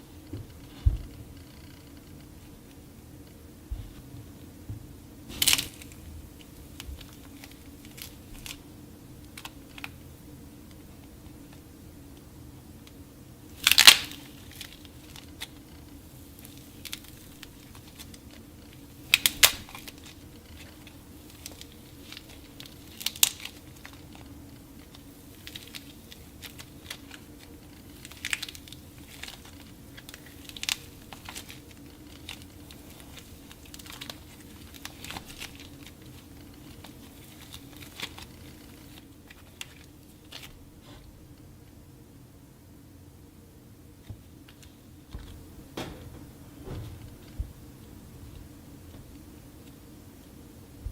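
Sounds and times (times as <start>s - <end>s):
dried clay cracking and crumbling: 5.3s - 13.0s, 13.6s - 41.1s.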